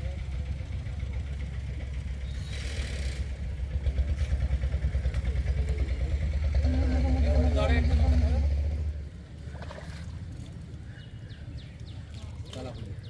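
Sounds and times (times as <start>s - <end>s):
boat engine throbbing: 0.0s - 13.0s.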